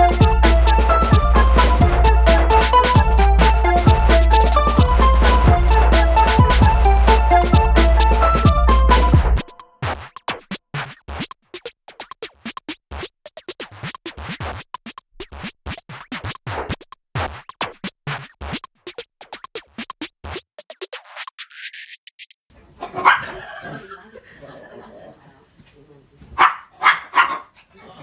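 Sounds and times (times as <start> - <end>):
choppy percussive music: 0.0 - 22.4.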